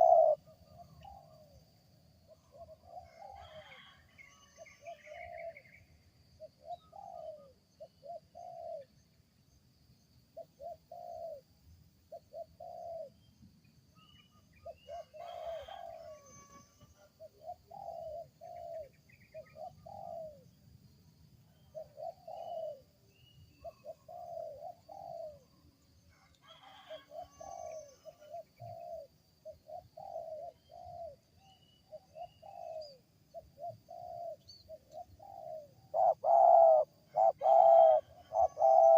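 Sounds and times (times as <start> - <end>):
dove cooing: 0.0 - 1.6, 2.5 - 3.9, 6.4 - 8.9, 10.4 - 11.4, 12.1 - 13.2, 14.6 - 16.2, 17.0 - 20.4, 21.7 - 22.8, 23.6 - 25.5, 26.5 - 31.2, 31.9 - 38.9.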